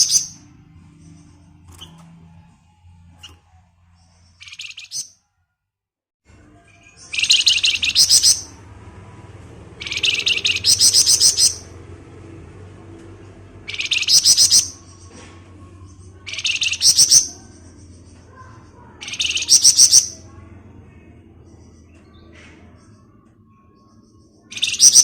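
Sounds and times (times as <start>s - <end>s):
low hum: 6.3s - 19.0s.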